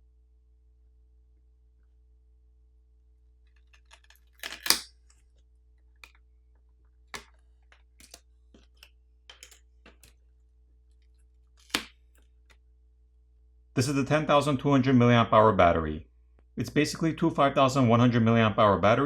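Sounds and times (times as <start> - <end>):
parts clattering: 3.5 - 5.4, 7.1 - 10.3
tools clicking and tapping: 3.6 - 5.0, 7.2 - 10.2.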